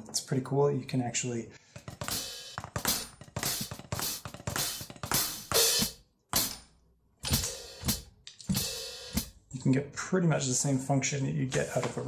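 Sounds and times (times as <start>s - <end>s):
electronic hi-hat strokes: 2.0s - 6.6s, 7.2s - 9.4s.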